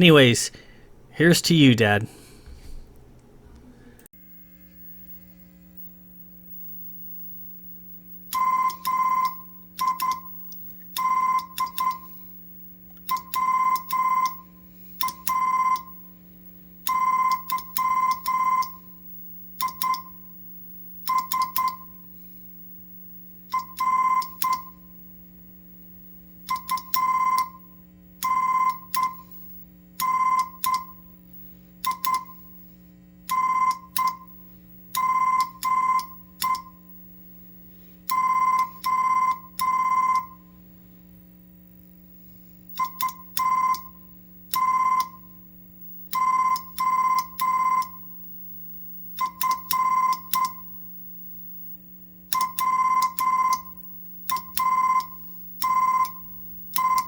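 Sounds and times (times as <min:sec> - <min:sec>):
faint steady hum: 0:00.0 - 0:57.0
morse code beeps: 0:08.3 - 0:12.2, 0:13.1 - 0:16.0, 0:16.8 - 0:18.9, 0:19.5 - 0:20.3, 0:21.0 - 0:22.0, 0:23.5 - 0:24.8, 0:26.4 - 0:31.1, 0:31.8 - 0:32.5, 0:33.3 - 0:34.4, 0:35.0 - 0:36.8, 0:38.1 - 0:40.4, 0:42.7 - 0:45.3, 0:45.9 - 0:57.0.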